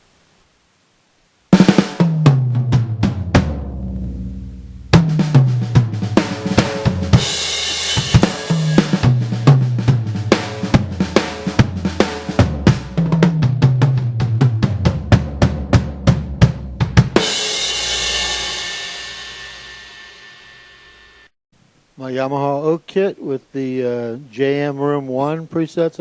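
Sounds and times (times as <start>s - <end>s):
drum beat of kick snare and cymbals: 1.5s - 20.4s
drum fill: 1.5s - 20.6s
cymbal wash: 17.2s - 21.3s.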